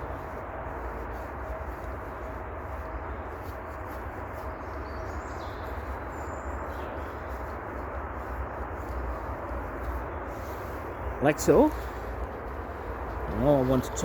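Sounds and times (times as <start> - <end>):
outdoor background rumble: 0.0 - 14.0
bird chirping: 4.4 - 7.6.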